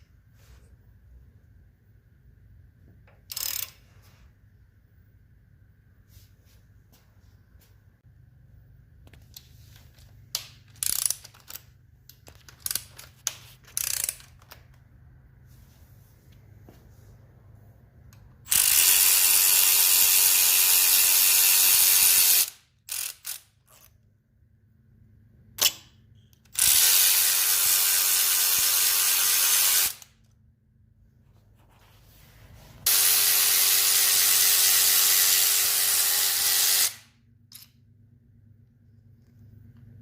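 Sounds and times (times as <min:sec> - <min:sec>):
power ratchet running: 0:03.3 - 0:03.7, 0:18.5 - 0:23.5, 0:26.5 - 0:30.1, 0:32.9 - 0:37.0.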